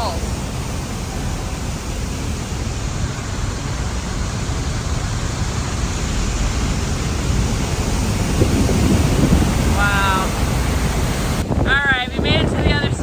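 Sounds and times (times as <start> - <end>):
water rushing down waterfall: 0.0 - 13.0.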